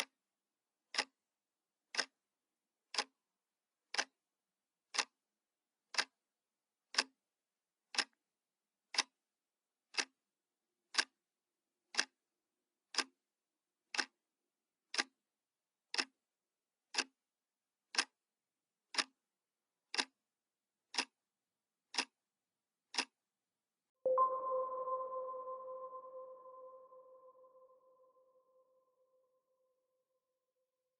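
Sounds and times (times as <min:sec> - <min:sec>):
clock ticking: 0:01.9 - 0:02.2, 0:02.9 - 0:03.1, 0:03.9 - 0:04.2, 0:04.9 - 0:05.2, 0:05.9 - 0:06.2, 0:06.9 - 0:07.2, 0:07.9 - 0:08.2, 0:10.9 - 0:11.1, 0:13.9 - 0:14.2, 0:14.9 - 0:15.2, 0:15.9 - 0:16.2, 0:16.9 - 0:17.2, 0:17.9 - 0:18.2, 0:18.9 - 0:19.2, 0:19.9 - 0:20.2, 0:20.9 - 0:21.3, 0:21.9 - 0:22.3, 0:22.9 - 0:23.2.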